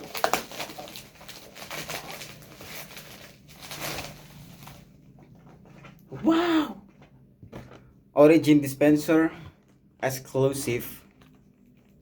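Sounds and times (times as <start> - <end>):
packaging rustling and scraping: 0.0 - 5.5.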